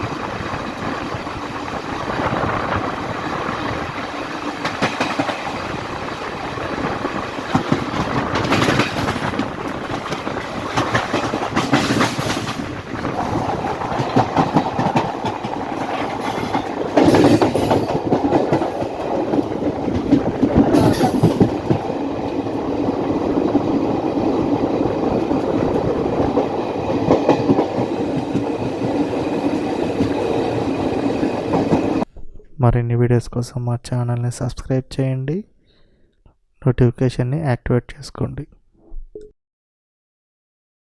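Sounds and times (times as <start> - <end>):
train wheels clattering over rail joints: 4.0 - 32.0.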